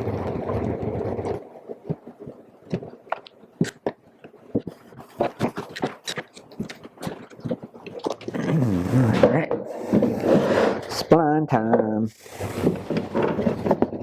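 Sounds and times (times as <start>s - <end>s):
wooden parts and clamps clicking: 12.6s - 14.0s.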